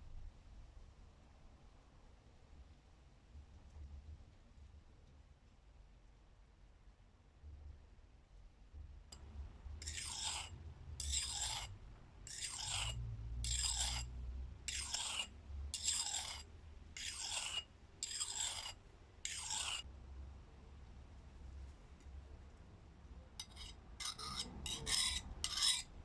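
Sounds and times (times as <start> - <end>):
knife rasping on sharpening stone: 9.8 - 11.7, 12.3 - 14.1, 14.7 - 19.8, 23.4 - 25.9.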